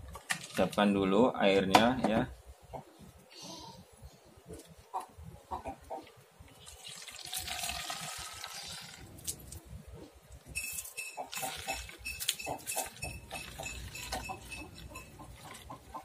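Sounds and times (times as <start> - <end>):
water pouring into container: 6.6 - 9.2.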